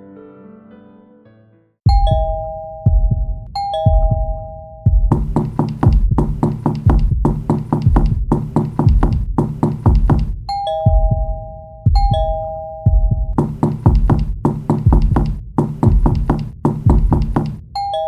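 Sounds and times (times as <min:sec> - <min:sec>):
two-tone doorbell chime: 0:01.9 - 0:05.0, 0:10.5 - 0:13.3, 0:17.8 - 0:18.0
rapid knocking: 0:04.9 - 0:11.3, 0:13.0 - 0:17.6.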